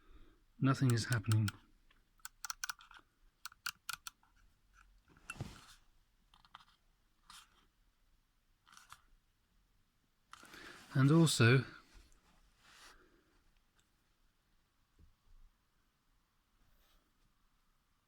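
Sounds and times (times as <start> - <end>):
dial clicks: 0.7 - 1.6, 2.2 - 4.2
soft handling rustles: 4.8 - 7.8, 10.3 - 14.0.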